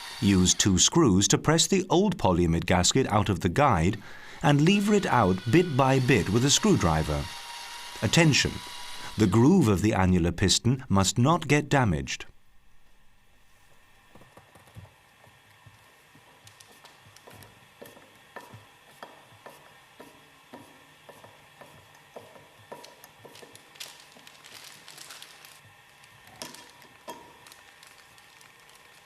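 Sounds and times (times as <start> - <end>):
faint steady hum: 0.0 - 29.0
hand tools clicking on metal: 20.0 - 24.2.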